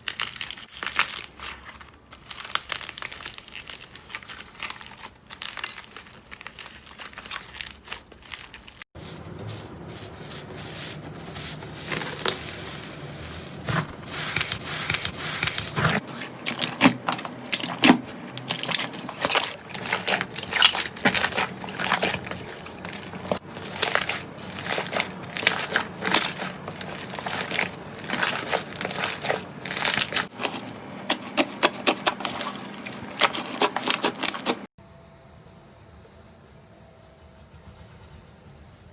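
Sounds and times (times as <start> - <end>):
slime crackling and popping: 15.8 - 30.5.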